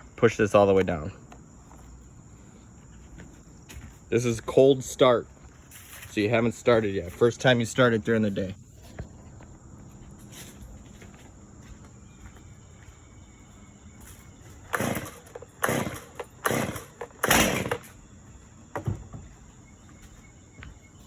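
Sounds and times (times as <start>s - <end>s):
chainsaw starter cord pulls: 14.7s - 17.9s.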